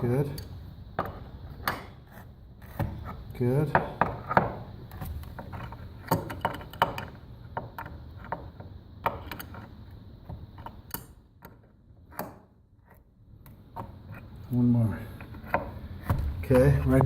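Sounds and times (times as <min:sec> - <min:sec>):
wrench clicking and knocking on bolt: 0:03.7 - 0:09.7.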